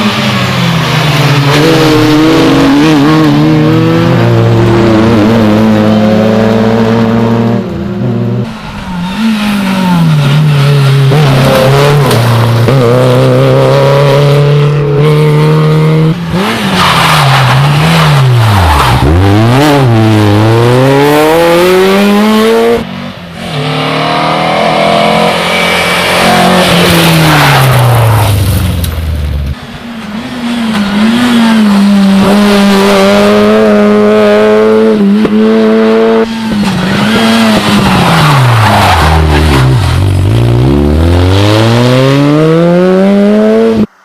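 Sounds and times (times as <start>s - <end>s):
rally car engines revving: 0.0s - 44.0s.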